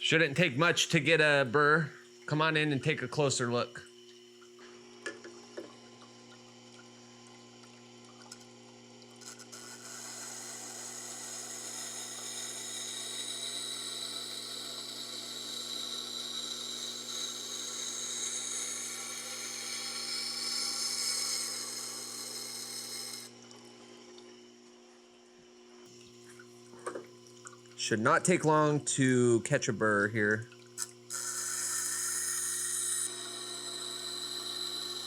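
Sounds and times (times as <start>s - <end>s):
sharpener motor humming: 9.2s - 23.3s, 30.8s - 35.0s
knife blade grinding hiss: 9.5s - 23.3s, 31.1s - 35.0s.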